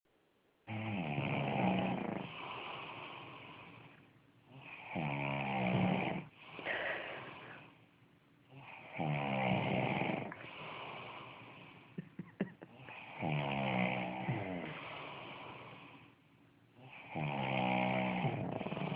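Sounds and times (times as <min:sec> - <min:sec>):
person snoring: 0:00.7 - 0:07.8, 0:08.5 - 0:16.2, 0:16.8 - 0:18.9
breathy out-breath: 0:06.4 - 0:07.8.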